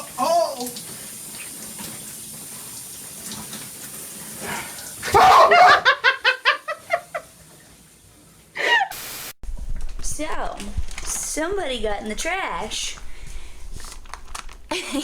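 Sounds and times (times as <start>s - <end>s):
water running: 0.0s - 9.3s
person laughing: 5.1s - 7.3s, 8.6s - 9.0s, 14.7s - 15.0s.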